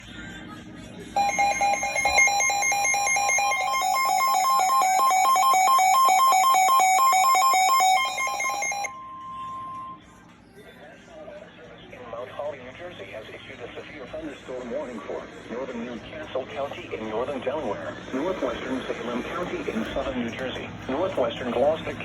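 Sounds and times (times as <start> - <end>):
two-tone electronic warble: 1.2 - 10.0.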